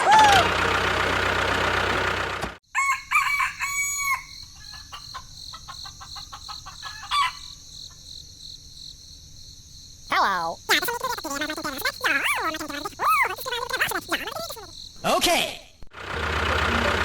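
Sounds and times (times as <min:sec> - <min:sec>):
rooster crowing: 0:02.7 - 0:05.2, 0:06.7 - 0:07.6
hen clucks: 0:04.7 - 0:07.4, 0:10.1 - 0:14.7.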